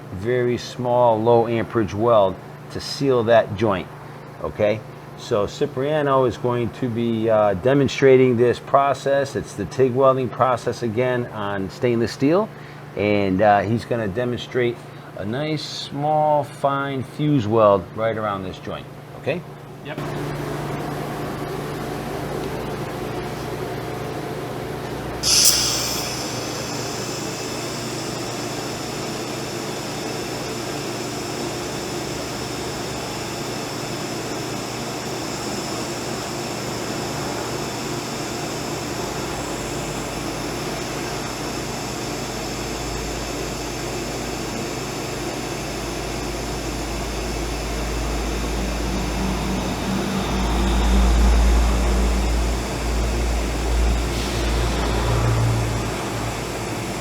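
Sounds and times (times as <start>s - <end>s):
welding arc hissing: 25.2s - 50.9s, 51.5s - 57.0s.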